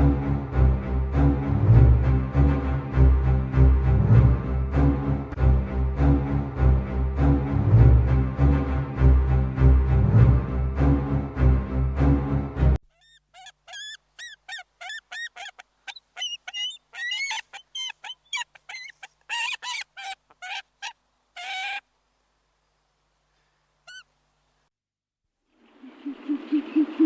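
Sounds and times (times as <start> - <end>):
music: 0.0 - 12.8.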